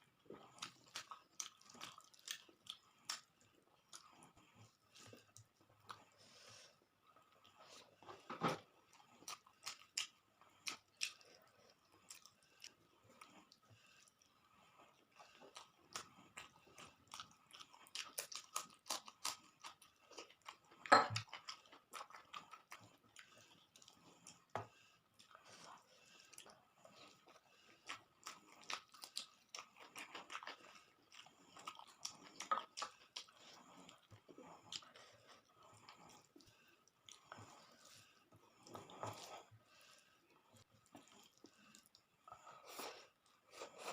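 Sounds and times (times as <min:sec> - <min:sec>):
person chewing crunchy food: 0:00.0 - 0:43.9.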